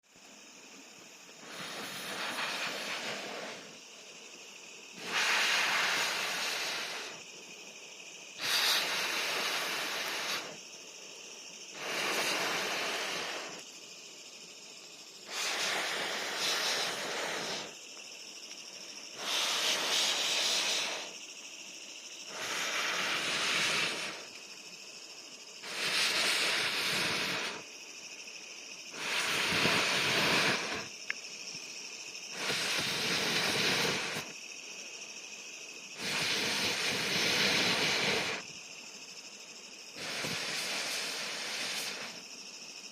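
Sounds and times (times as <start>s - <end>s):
soft steady hiss: 0.0s - 42.9s
air blown through blow pipe: 22.3s - 24.3s, 25.6s - 27.6s, 29.0s - 30.9s.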